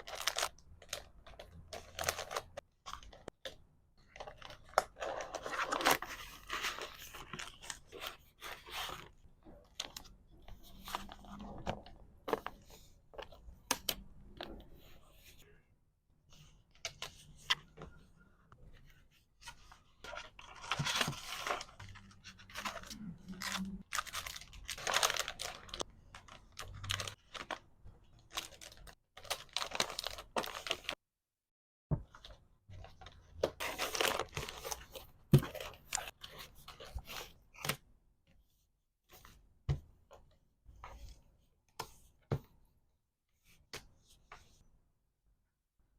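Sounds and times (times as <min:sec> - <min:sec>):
plastic packaging tearing and crinkling: 0:21.4 - 0:27.6.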